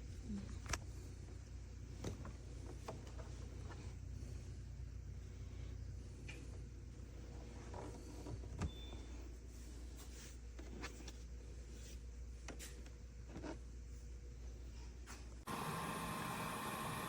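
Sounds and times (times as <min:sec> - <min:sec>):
robot vacuum humming: 0:15.5 - 0:17.0.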